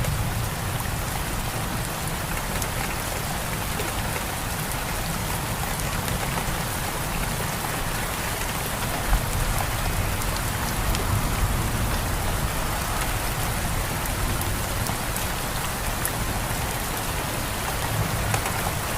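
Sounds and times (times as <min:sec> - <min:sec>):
heavy rain: 0:00.0 - 0:18.9.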